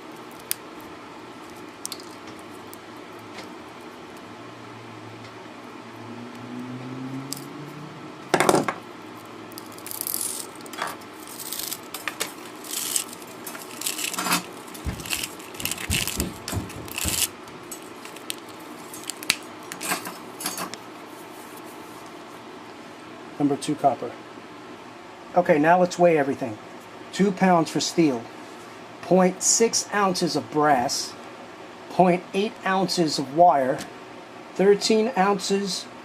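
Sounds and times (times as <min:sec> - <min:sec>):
small metal parts clinking: 0:09.6 - 0:16.3.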